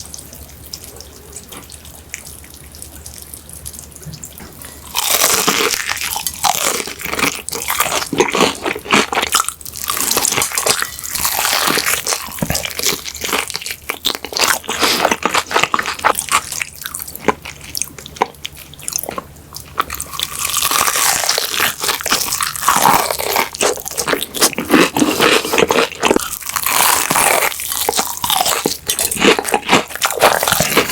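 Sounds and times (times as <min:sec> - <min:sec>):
chewing: 0:00.0 - 0:30.9
crunchy bites into fried chicken: 0:11.4 - 0:30.9.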